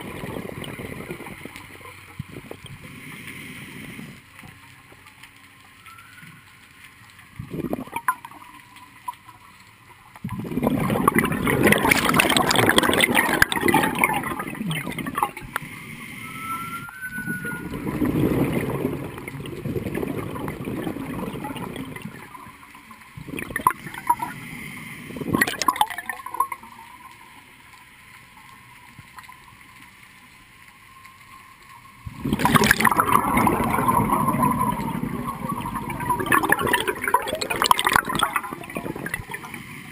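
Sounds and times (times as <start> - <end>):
underwater regulator bubbling: 7.4 - 8.5, 10.2 - 22.5, 23.2 - 27.1, 32.1 - 39.9.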